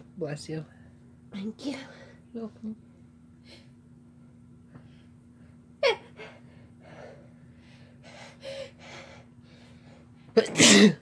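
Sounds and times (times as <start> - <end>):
heavy breathing: 6.2 - 10.4.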